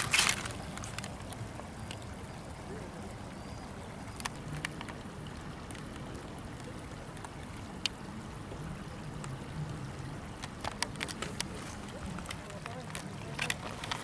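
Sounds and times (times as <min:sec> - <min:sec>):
flowing river water: 0:00.0 - 0:14.0.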